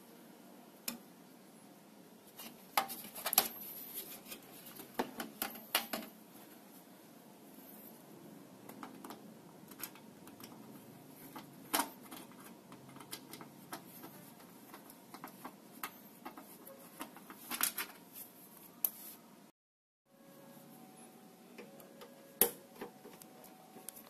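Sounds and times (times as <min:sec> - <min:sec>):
faint low hum: 0:20.1 - 0:24.0.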